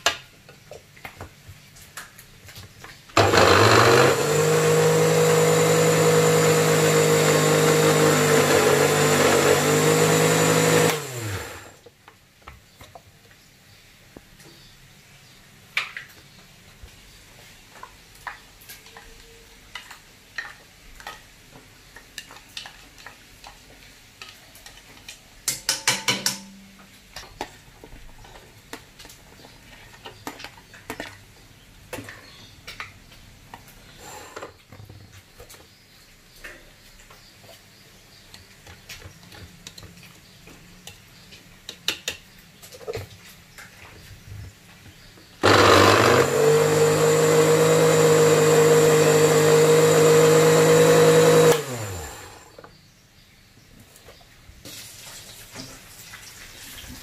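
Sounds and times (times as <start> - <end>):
utensils clinking against pots: 24.7 - 26.9.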